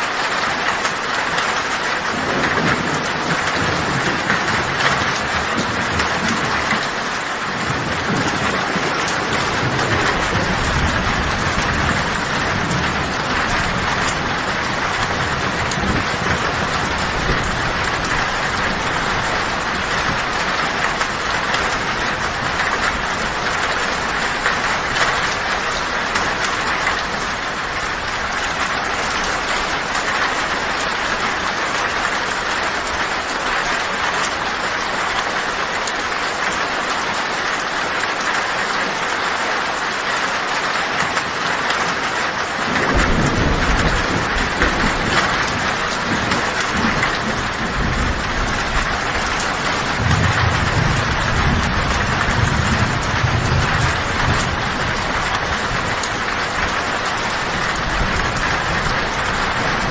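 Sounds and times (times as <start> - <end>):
heavy rain on a tin roof: 0.0 - 59.9
low thunder rumble: 1.9 - 33.1, 42.7 - 59.9.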